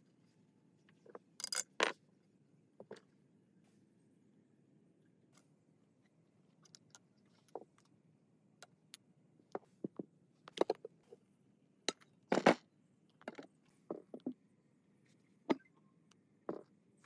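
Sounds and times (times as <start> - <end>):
small parts clicking and tapping: 1.4 - 1.9, 6.6 - 7.6.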